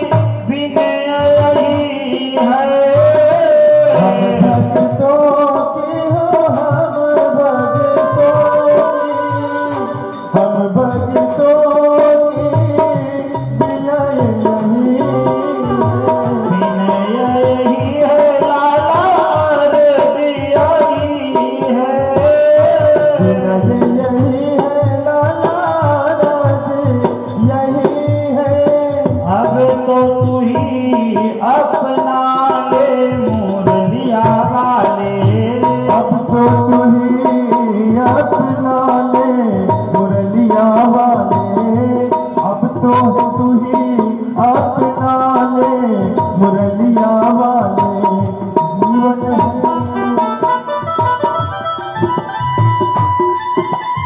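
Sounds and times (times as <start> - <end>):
devotional music with tabla: 0.0 - 54.0.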